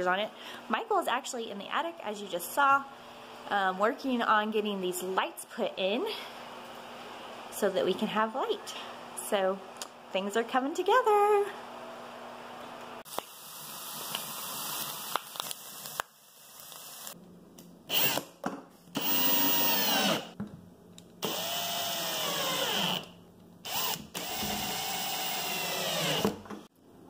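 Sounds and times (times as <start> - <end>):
power drill whirring: 17.9 - 18.2, 19.0 - 20.4, 21.2 - 26.4.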